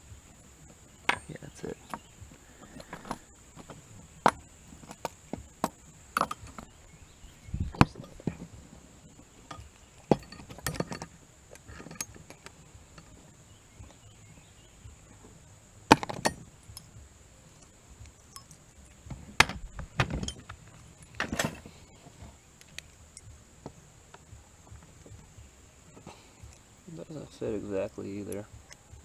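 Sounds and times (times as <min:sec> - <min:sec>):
wrench clinking on bolts: 0:06.1 - 0:06.7, 0:09.5 - 0:13.1, 0:15.9 - 0:16.9, 0:17.5 - 0:21.7
sharp clicks: 0:22.6 - 0:23.4.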